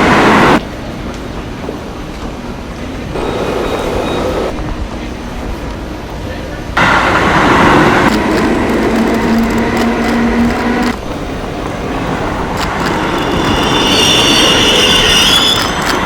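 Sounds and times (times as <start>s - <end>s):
train rumble: 0.0s - 16.0s
high squealing tones: 3.2s - 4.7s, 8.4s - 16.0s.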